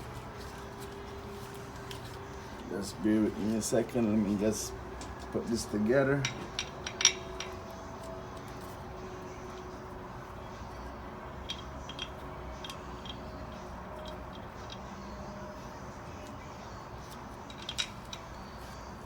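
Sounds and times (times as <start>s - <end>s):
steady low hum: 0.0s - 19.0s
small metal parts clicking: 11.4s - 15.0s, 17.1s - 18.4s.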